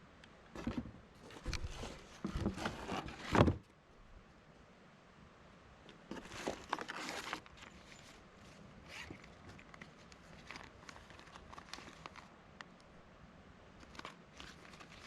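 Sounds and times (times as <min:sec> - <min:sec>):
packaging rustling: 0:06.1 - 0:08.1, 0:08.9 - 0:12.3, 0:13.8 - 0:15.0.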